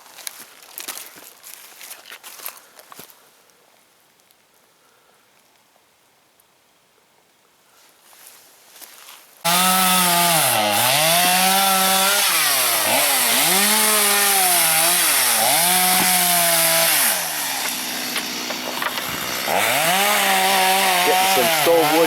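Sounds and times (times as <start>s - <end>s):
chainsaw cutting wood: 9.5s - 22.0s.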